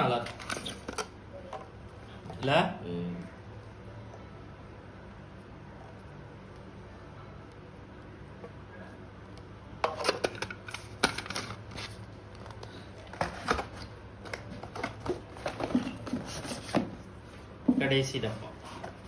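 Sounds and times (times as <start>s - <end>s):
plastic and cardboard crinkling: 9.9s - 17.5s.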